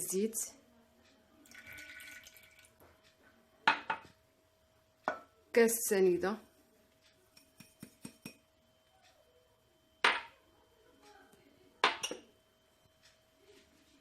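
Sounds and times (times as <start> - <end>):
dishware knocking: 10.0 - 10.3, 11.8 - 12.3.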